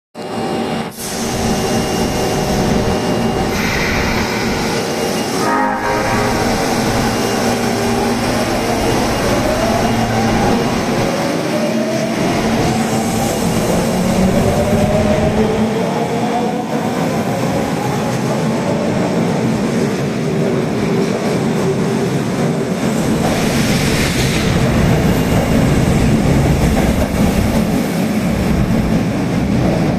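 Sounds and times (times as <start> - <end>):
subway motor whine rising: 0.3 - 18.1.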